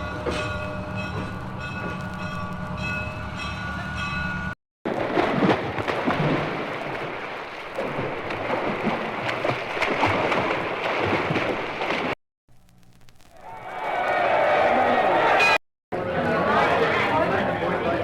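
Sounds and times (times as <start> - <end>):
water splashing in pool: 4.9 - 12.2.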